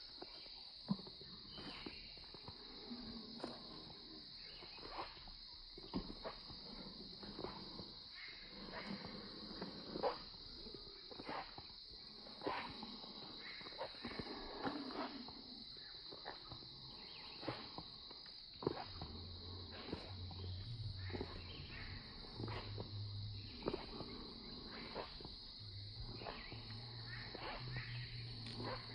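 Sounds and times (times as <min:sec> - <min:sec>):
insects droning: 0:00.0 - 0:28.9
low hum: 0:18.9 - 0:28.9.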